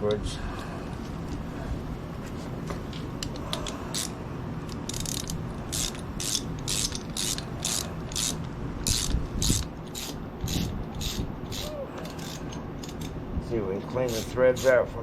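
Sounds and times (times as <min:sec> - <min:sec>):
ratchet wrench clicking: 0:03.6 - 0:04.2, 0:04.9 - 0:13.1, 0:14.0 - 0:14.8.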